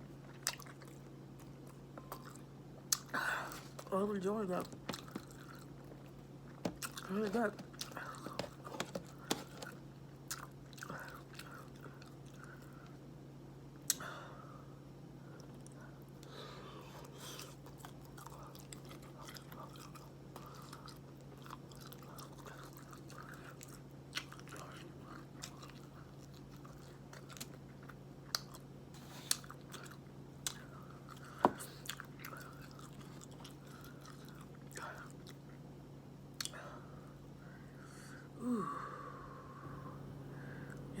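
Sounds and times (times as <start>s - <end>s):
steady low hum: 0.0s - 41.0s
close-miked chewing: 0.2s - 3.9s, 4.8s - 12.8s, 17.2s - 35.6s.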